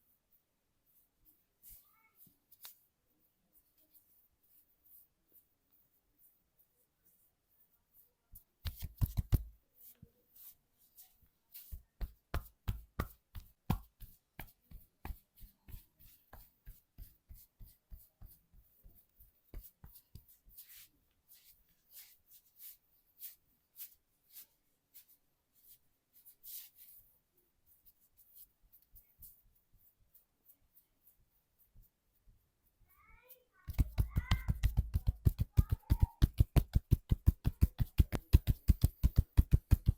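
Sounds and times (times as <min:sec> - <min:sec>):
hands slapping a body: 0:08.6 - 0:10.0, 0:11.5 - 0:20.8, 0:33.6 - 0:39.9.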